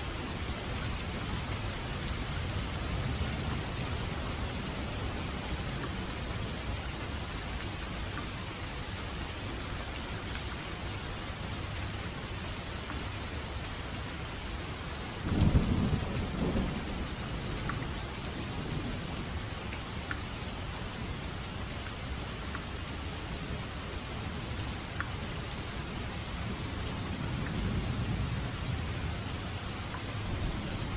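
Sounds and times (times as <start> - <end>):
light rain falling: 0.0 - 30.9
low rumble of thunder: 0.4 - 7.1, 15.0 - 19.7, 25.8 - 30.9.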